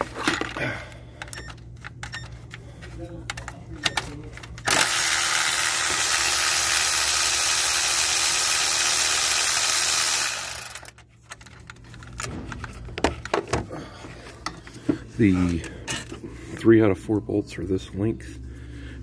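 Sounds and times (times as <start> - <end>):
parts clicking and knocking: 0.0 - 16.3
power tool running: 4.6 - 11.0.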